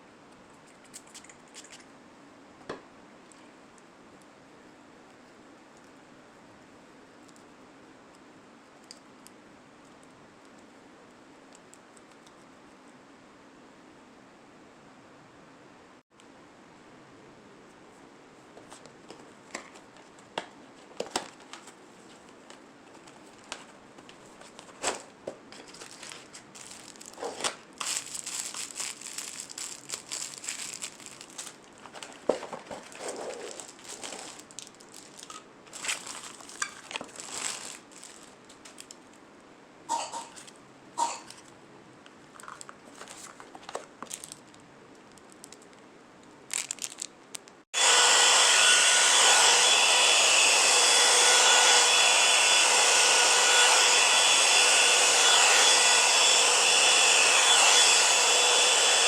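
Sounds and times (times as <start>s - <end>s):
light rustling and handling: 18.4s - 39.2s, 42.3s - 47.6s
hot air brush blowing: 47.8s - 59.0s.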